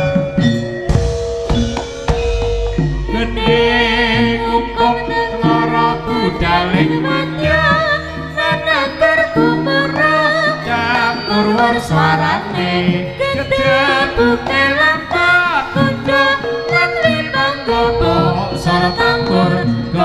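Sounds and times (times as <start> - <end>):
drums: 0.0 - 11.0
high wavering melody: 0.0 - 20.0
held low notes: 0.4 - 20.0.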